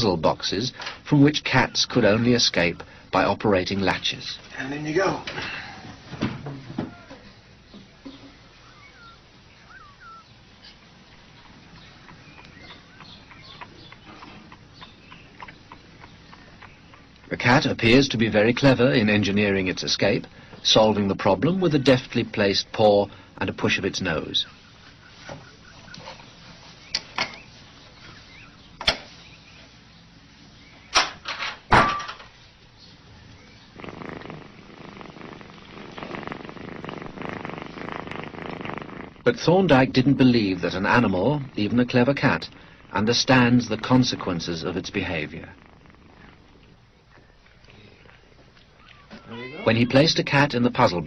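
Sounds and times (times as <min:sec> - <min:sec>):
high chirping calls: 0:06.9 - 0:18.4, 0:24.4 - 0:31.0, 0:32.8 - 0:38.8.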